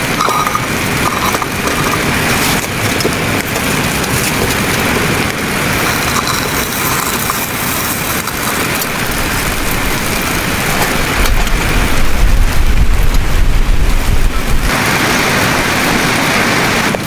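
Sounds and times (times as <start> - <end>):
heavy low rumble: 0.0 - 16.2
winter storm hiss: 0.0 - 17.0.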